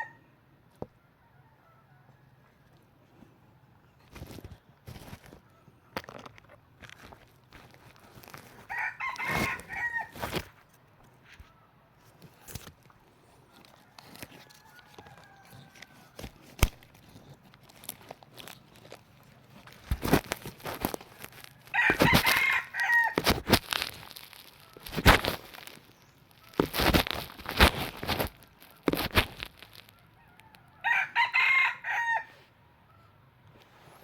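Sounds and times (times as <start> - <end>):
rooster crowing: 0.0 - 0.2, 1.1 - 2.7, 8.7 - 10.2, 13.7 - 16.2, 21.6 - 23.2, 30.0 - 32.4
sharp clicks and rustles: 4.0 - 30.6.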